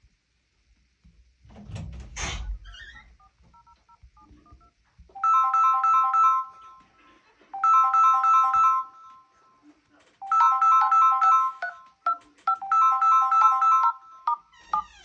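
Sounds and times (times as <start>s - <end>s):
phone ringtone melody: 5.2s - 6.8s, 7.6s - 9.2s, 10.2s - 14.5s.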